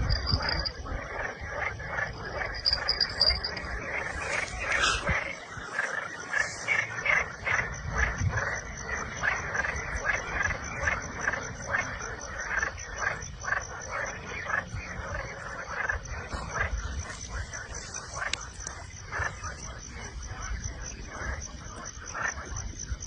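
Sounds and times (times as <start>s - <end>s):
frogs croaking in chorus: 0.0s - 23.0s.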